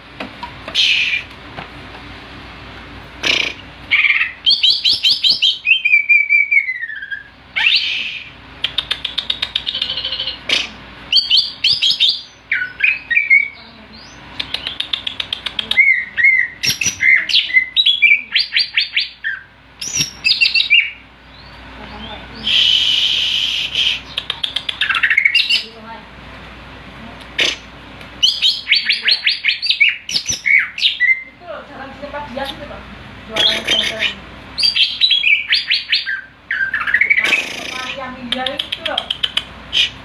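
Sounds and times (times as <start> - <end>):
songbird rattling trills and chirps: 3.9 - 7.9, 11.1 - 22.6, 28.2 - 31.3.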